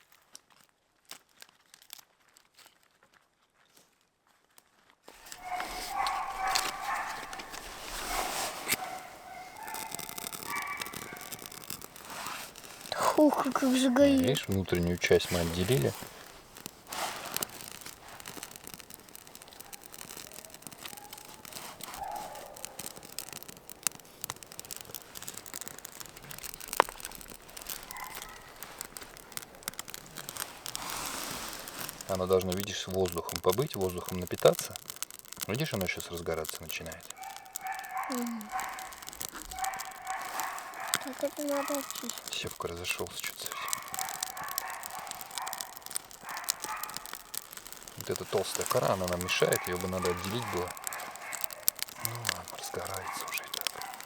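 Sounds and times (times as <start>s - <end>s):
campfire crackling: 4.6s - 54.0s
sharp snaps: 5.2s - 54.0s
dog whining: 8.8s - 11.6s.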